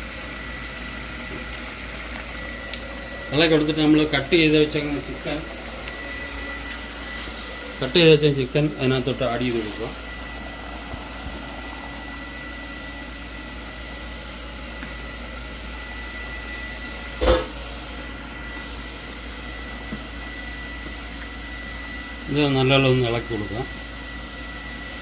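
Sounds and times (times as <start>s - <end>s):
kitchen background hum: 0.0s - 25.0s
thin high whine: 2.1s - 23.8s.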